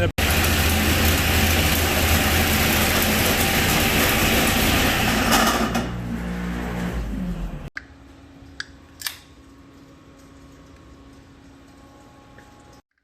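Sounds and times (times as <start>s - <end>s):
loud engine running on dynamometer: 0.0s - 7.7s.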